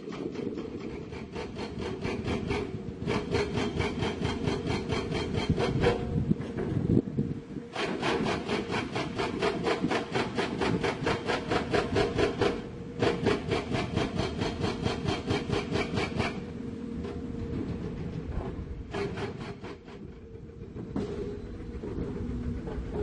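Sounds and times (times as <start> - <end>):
hydraulic breaker hammering rock: 0.0 - 6.8, 7.7 - 23.0
diesel engine running: 12.6 - 19.0, 19.6 - 23.0.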